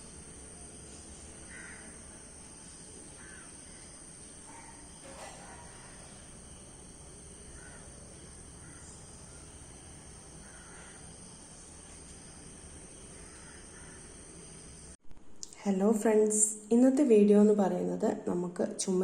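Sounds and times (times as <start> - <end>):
distant bird calls: 0.0 - 14.5
high-pitched insect drone: 0.0 - 15.0.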